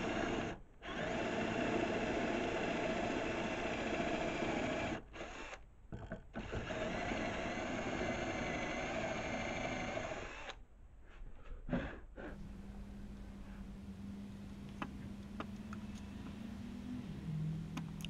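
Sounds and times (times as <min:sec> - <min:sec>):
electric power tool motor: 0:00.0 - 0:05.6, 0:06.4 - 0:10.6.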